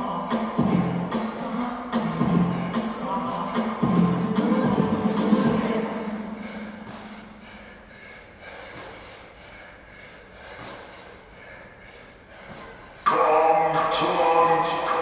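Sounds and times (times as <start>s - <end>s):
loud music: 0.0s - 7.4s
person breathing hard: 0.0s - 15.0s.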